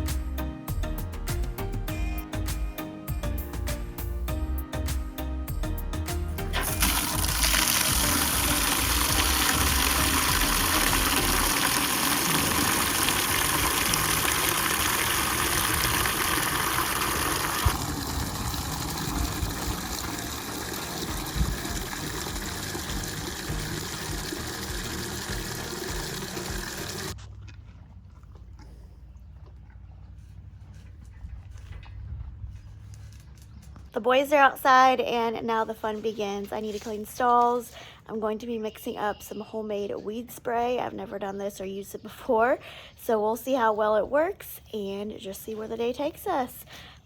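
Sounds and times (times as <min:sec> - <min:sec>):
running water: 0:06.6 - 0:27.2.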